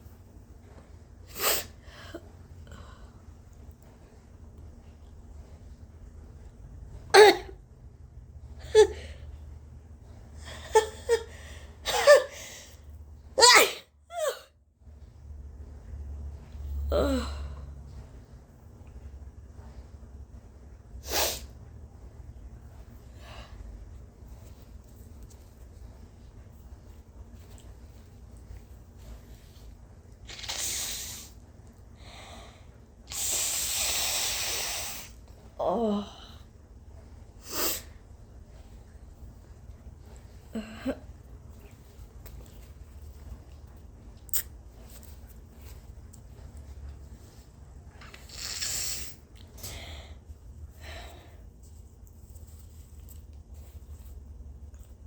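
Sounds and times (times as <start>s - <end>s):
hissing sneeze inhalations: 1.3s - 1.8s, 21.0s - 21.6s, 30.2s - 31.4s, 33.1s - 35.2s, 37.4s - 38.0s, 48.0s - 49.8s.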